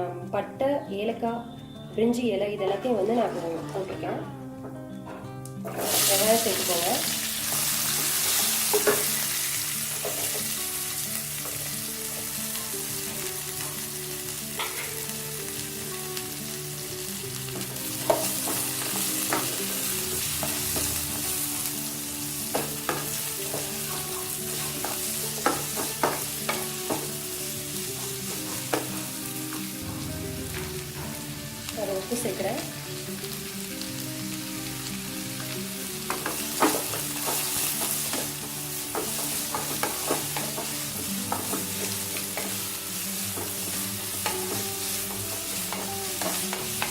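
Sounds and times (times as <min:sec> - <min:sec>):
onions sizzling in hot oil: 0:05.6 - 0:46.9.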